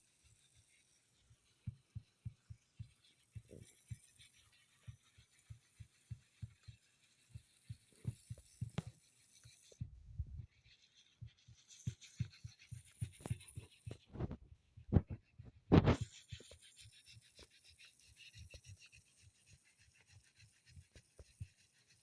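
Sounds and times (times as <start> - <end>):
soft low thumps and knocks: 9.8 - 10.5, 13.9 - 16.0.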